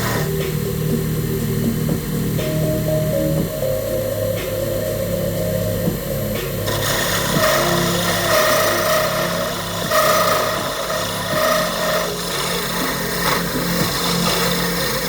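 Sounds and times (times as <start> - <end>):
rasping scraping of material: 0.0 - 0.3, 6.7 - 15.0
small power tool running: 0.0 - 0.4, 6.6 - 15.0.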